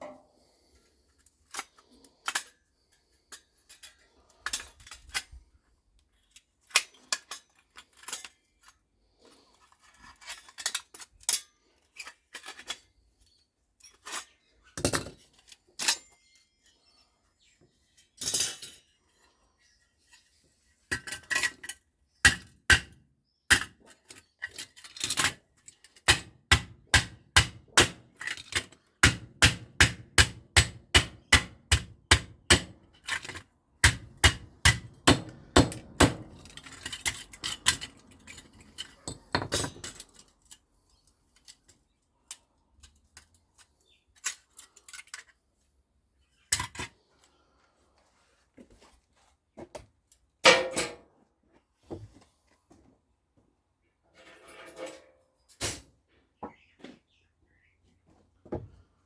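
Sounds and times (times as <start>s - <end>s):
hand tools clinking on metal: 33.0s - 40.6s.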